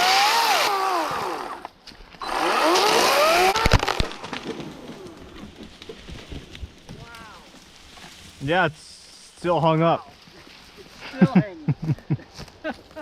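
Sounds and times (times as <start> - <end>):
chainsaw cutting wood: 0.0 - 5.6
wood cracking: 2.6 - 8.4.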